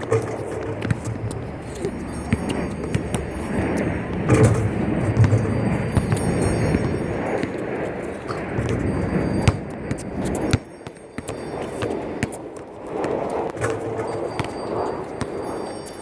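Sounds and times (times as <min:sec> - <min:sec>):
low rumbling noise: 0:00.0 - 0:10.3
basketballs bouncing: 0:00.0 - 0:15.9.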